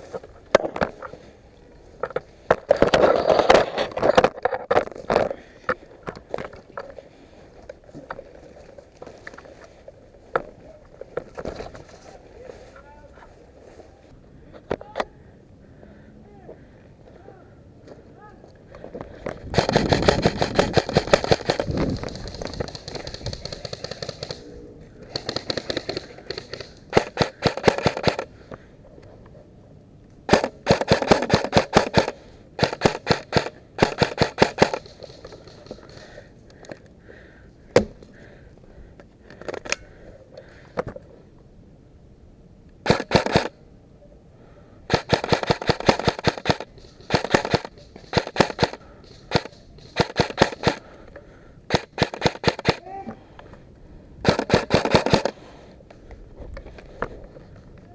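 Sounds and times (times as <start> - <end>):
airsoft guns firing rapid bursts: 19.5 - 24.4, 25.1 - 28.3, 30.3 - 36.0, 42.8 - 43.5, 44.9 - 50.9, 51.7 - 52.8, 54.2 - 55.4.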